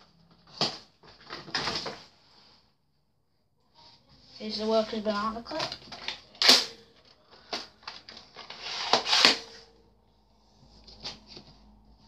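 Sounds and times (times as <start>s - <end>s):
plastic packaging rustling: 0.2s - 2.2s, 7.0s - 9.7s.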